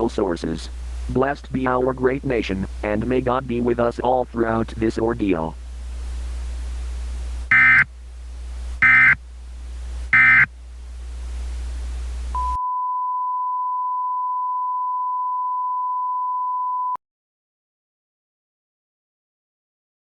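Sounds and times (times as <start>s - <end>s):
low hum and hiss: 0.0s - 12.6s
alert data tone bursts: 7.5s - 7.9s, 8.8s - 9.2s, 10.2s - 10.5s
steady single-pitch tone: 7.5s - 7.9s, 8.8s - 9.2s, 10.1s - 10.5s, 12.3s - 17.0s.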